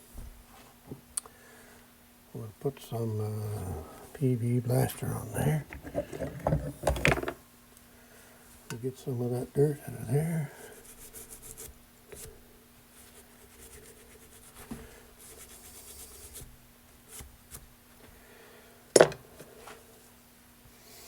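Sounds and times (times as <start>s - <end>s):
faint scraping and rubbing: 4.7s - 7.0s.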